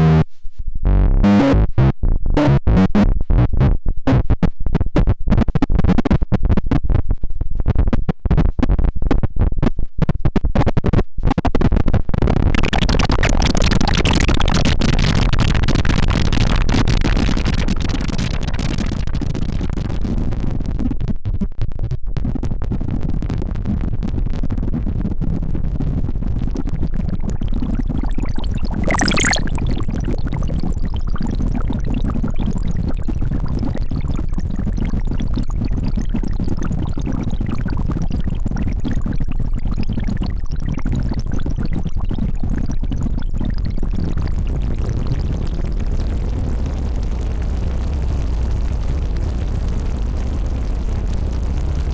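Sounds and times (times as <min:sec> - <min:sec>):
short choppy synth notes: 0:28.6 - 0:29.8
synth sweep falling: 0:28.7 - 0:29.8.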